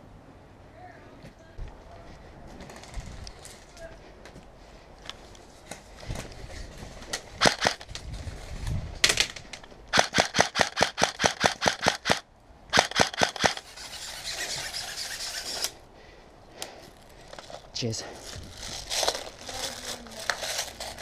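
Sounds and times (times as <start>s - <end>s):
airsoft guns firing: 7.4s - 7.8s, 9.9s - 13.6s.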